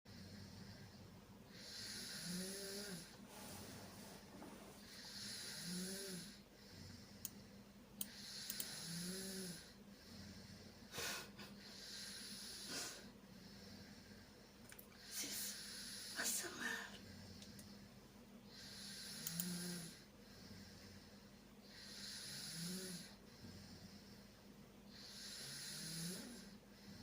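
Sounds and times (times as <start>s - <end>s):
person snoring: 0.1s - 7.4s, 8.0s - 14.3s, 15.0s - 17.6s, 18.5s - 21.0s, 21.6s - 24.2s, 24.9s - 27.0s
sharp breath sounds: 0.1s - 8.8s.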